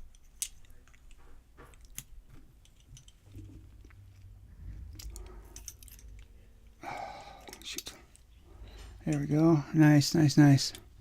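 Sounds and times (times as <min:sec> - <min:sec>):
small metal clicks and scrapes: 0:00.0 - 0:06.8.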